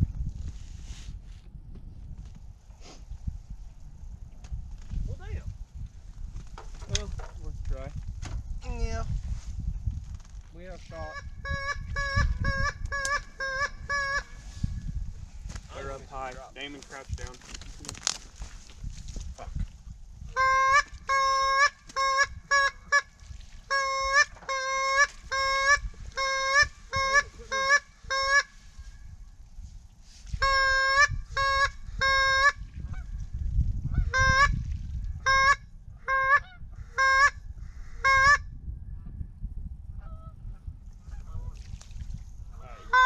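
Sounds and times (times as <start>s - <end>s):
wind rumble on microphone: 0.0s - 43.0s
goose honking: 20.3s - 23.1s, 23.7s - 28.5s, 42.6s - 43.0s.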